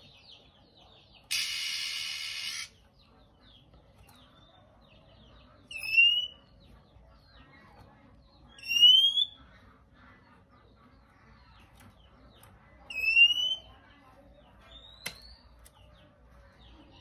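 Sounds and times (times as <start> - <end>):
soft bird chattering: 0.0 - 17.0
bird whistled shrieks: 1.3 - 2.7, 8.6 - 9.4, 12.9 - 13.7.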